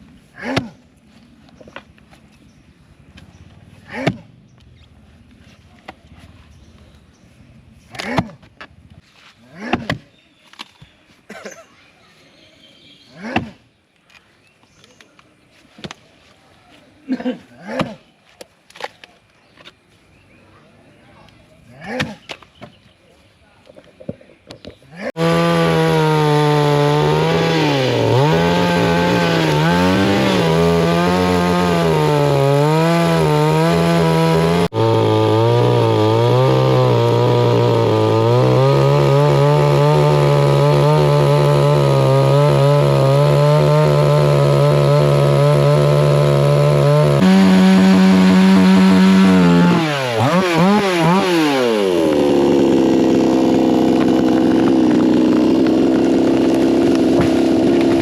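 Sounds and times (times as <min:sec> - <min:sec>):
chainsaw cutting wood: 0:25.1 - 0:58.0.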